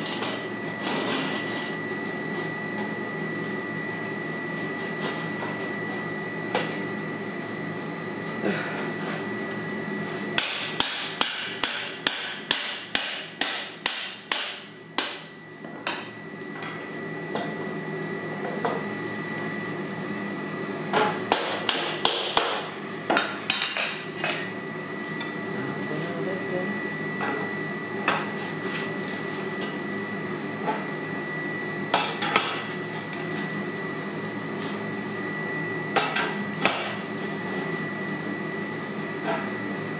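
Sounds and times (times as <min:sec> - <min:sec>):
background hum with high whine: 0:00.0 - 0:39.9
hammer striking metal on anvil: 0:10.4 - 0:15.2, 0:21.3 - 0:22.6.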